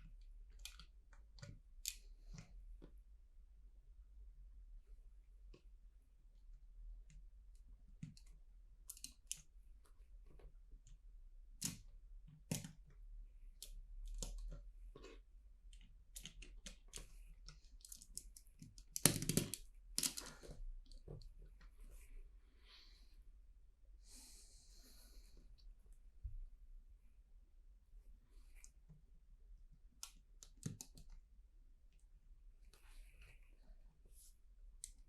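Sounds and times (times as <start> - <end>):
plastic bricks clicking and clattering: 17.8 - 20.4.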